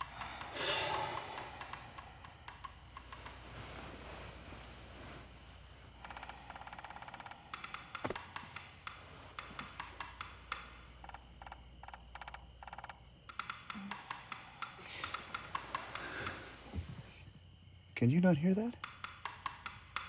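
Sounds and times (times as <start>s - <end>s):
woodpecker pecking on wood: 0.0s - 3.2s, 6.0s - 16.4s, 18.8s - 20.0s.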